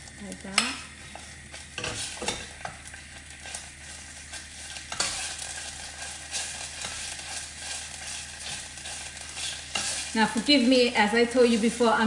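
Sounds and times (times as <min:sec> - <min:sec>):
paste sizzling in oil: 0:00.0 - 0:12.0
spoon scraping and knocking pan: 0:01.1 - 0:02.8, 0:04.3 - 0:10.2.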